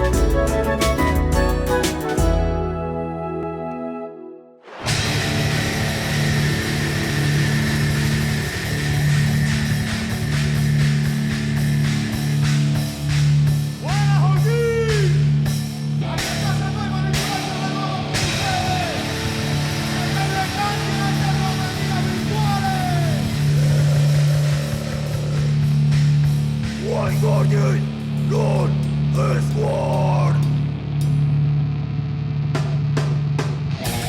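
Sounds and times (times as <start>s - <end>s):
drum and cymbal hits: 0.0s - 2.7s, 4.8s - 29.1s, 32.5s - 34.0s
rock music: 0.0s - 3.4s, 4.8s - 28.4s, 32.4s - 34.0s
sliding bending notes: 0.0s - 4.5s.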